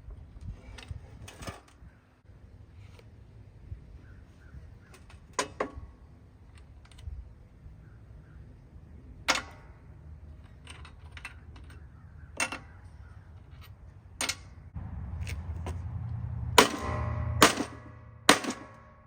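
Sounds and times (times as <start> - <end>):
low rumble: 14.7 - 19.0
ringing metal strikes: 16.6 - 19.0.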